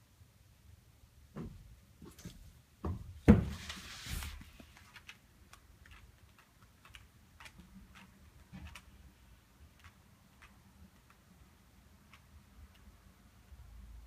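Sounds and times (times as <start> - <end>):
rustling: 3.3 - 9.0.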